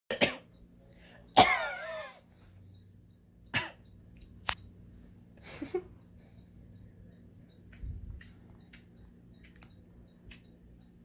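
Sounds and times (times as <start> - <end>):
person coughing: 1.3 - 2.2, 3.5 - 3.8.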